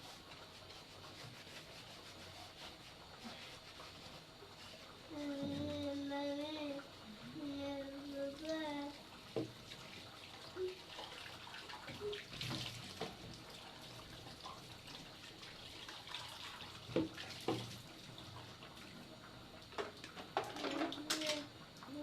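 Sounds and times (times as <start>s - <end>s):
tap water running into sink: 8.0s - 18.9s, 19.6s - 22.0s.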